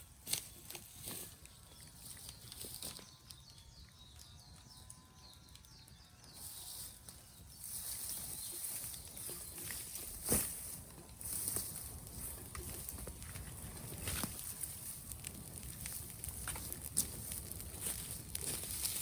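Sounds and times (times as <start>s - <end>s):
bamboo bonfire crackling: 0.0s - 19.0s.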